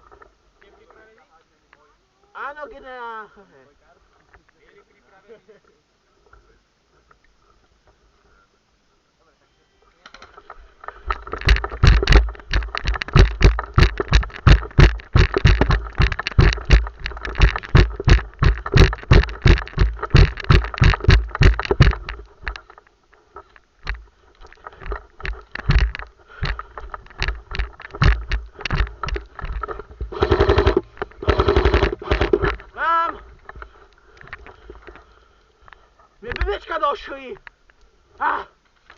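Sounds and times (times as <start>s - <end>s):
running footsteps: 10.1s - 37.4s
airsoft gunfire: 30.1s - 32.5s.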